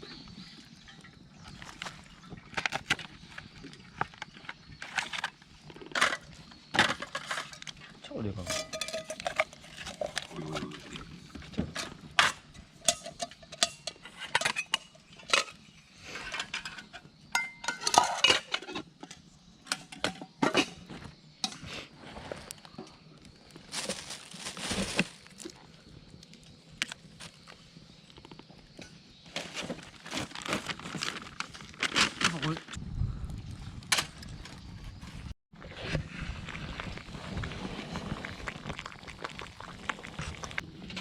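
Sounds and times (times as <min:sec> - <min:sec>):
cookware clinking and knocking: 0:08.5 - 0:09.5, 0:17.4 - 0:18.8.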